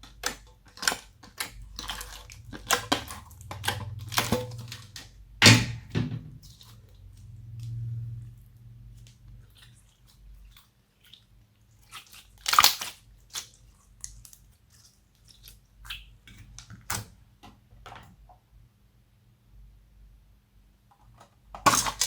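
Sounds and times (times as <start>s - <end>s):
slime squelching and crackling: 0.0s - 5.4s, 6.4s - 16.9s.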